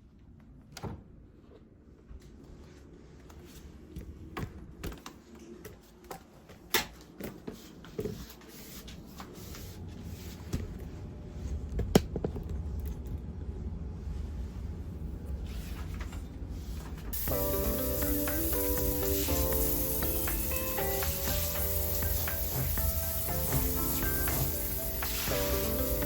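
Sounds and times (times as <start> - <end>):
low steady rumble: 10.8 - 17.8.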